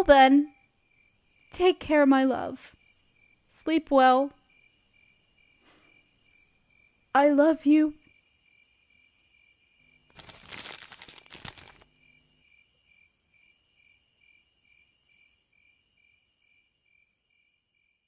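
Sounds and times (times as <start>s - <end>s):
crickets chirping: 0.5s - 1.7s, 2.7s - 18.0s
crackling rustle: 10.1s - 12.0s.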